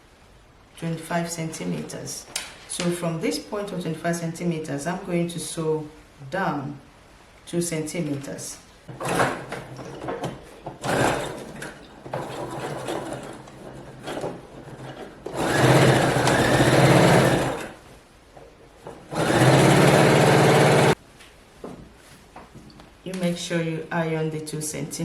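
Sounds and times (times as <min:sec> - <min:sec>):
sewing machine stitching: 0:08.9 - 0:17.8, 0:18.8 - 0:21.0.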